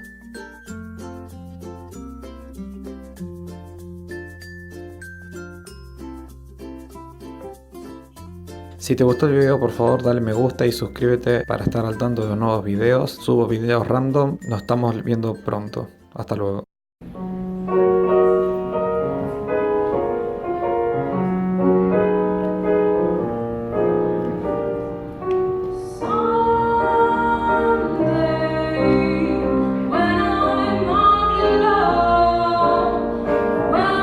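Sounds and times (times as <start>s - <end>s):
keyboard music: 0.0s - 34.0s
voices singing: 26.0s - 34.0s.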